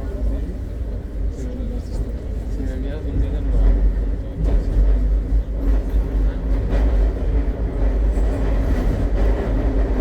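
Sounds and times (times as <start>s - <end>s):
train wheels rumbling on rails: 0.0s - 10.0s.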